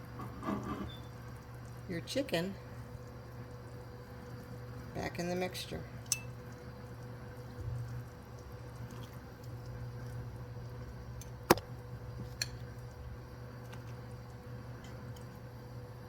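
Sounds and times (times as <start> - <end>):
steady low hum: 1.0 - 16.0
food squishing: 6.1 - 15.5.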